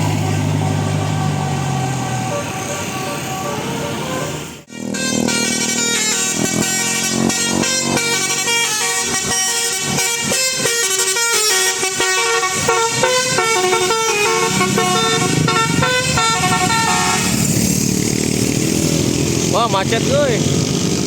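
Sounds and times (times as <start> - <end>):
bus engine noise: 0.0 - 21.0
musical air horns playing a tune: 2.0 - 17.5.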